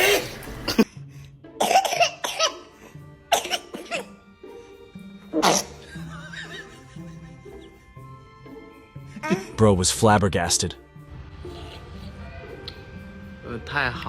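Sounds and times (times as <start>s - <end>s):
background music: 0.0s - 14.0s
person sneezing: 5.4s - 5.8s
laughter: 5.8s - 7.8s.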